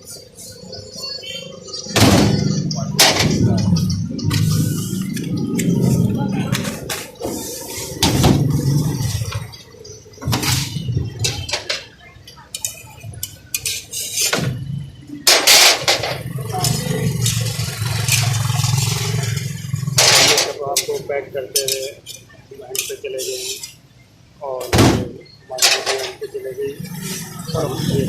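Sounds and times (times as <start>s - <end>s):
traffic hum: 0.0s - 28.0s
background voices: 2.3s - 9.7s, 14.6s - 23.8s, 24.4s - 28.0s
utensils clinking and clattering: 10.2s - 14.4s, 15.3s - 23.8s, 25.5s - 28.0s.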